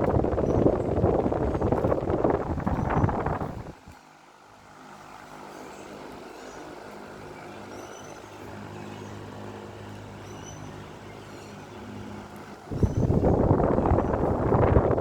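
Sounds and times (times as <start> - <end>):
loud rush of air: 0.0 - 3.8, 12.7 - 15.0
fan motor hum and blade whir: 0.0 - 15.0.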